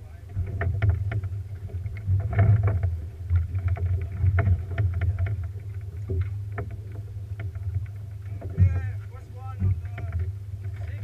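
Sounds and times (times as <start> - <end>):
boat engine low rumble: 0.0 - 11.0
water slapping against hull: 0.0 - 11.0.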